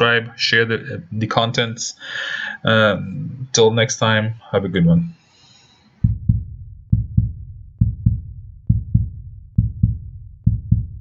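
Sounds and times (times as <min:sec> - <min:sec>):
heartbeat thuds: 0:06.0 - 0:11.0.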